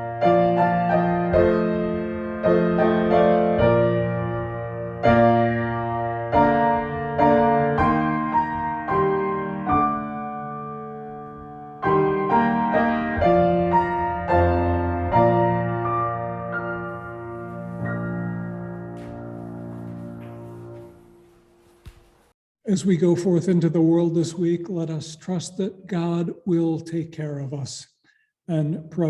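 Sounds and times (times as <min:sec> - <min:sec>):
slow solo piano: 0:00.0 - 0:22.3.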